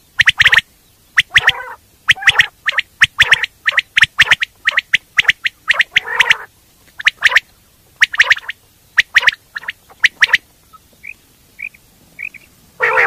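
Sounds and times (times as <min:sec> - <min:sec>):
quail calling sharp notes: 0:00.0 - 0:13.0
raspy gurgling bird notes: 0:01.2 - 0:07.4, 0:08.0 - 0:10.4.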